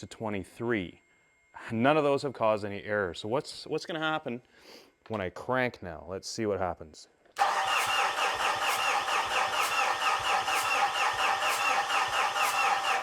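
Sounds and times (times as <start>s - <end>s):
diesel engine cranking: 7.4s - 13.0s.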